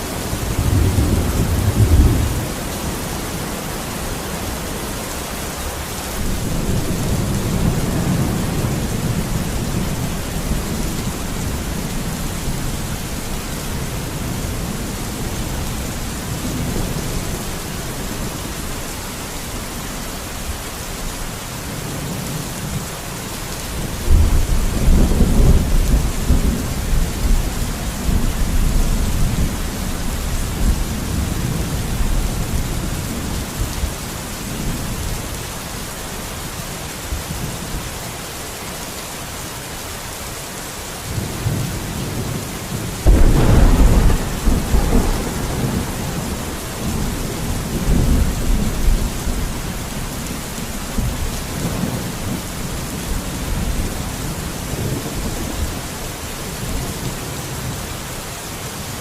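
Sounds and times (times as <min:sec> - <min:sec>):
thunder rumbling: 0:00.0 - 0:03.0, 0:06.2 - 0:18.4, 0:43.0 - 0:55.8
steady rain: 0:00.0 - 0:59.0.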